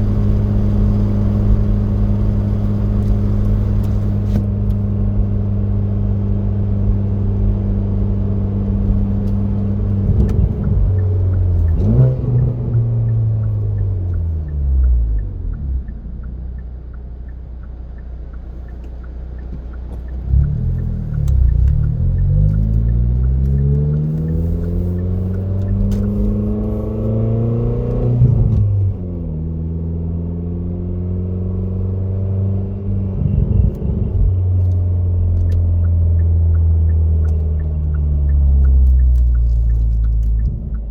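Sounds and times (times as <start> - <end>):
car engine humming: 0.0 - 40.9
faint regular ticking: 8.9 - 26.2, 35.4 - 40.9.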